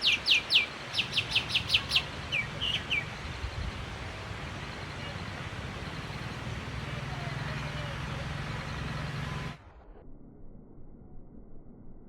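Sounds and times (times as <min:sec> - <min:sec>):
songbird whistling: 0:00.0 - 0:03.1.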